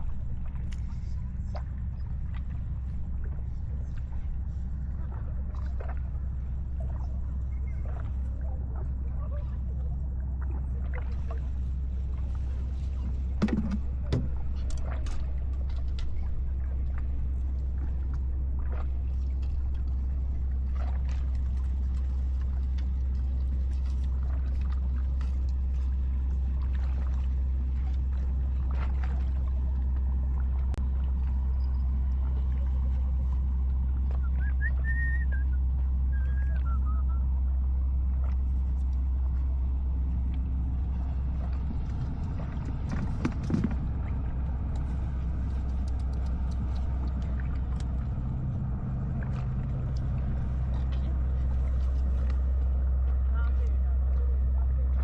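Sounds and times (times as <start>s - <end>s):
boat engine droning: 0.0s - 55.0s
high warbling whistles: 34.2s - 37.2s.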